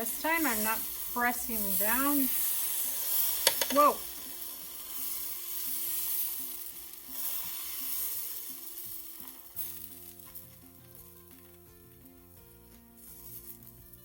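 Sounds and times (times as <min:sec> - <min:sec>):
batter sizzling on griddle: 0:00.0 - 0:14.0
quiet background music: 0:00.0 - 0:14.0.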